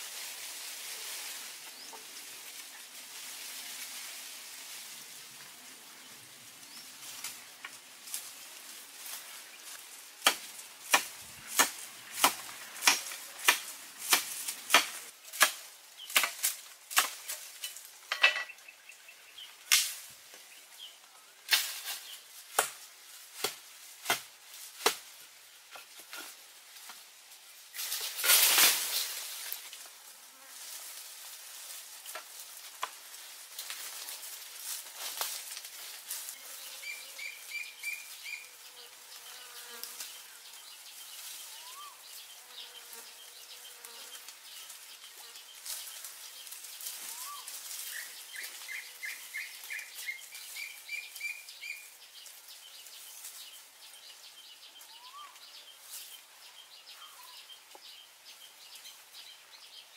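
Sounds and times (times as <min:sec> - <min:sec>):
insects buzzing: 0:36.0 - 0:53.8.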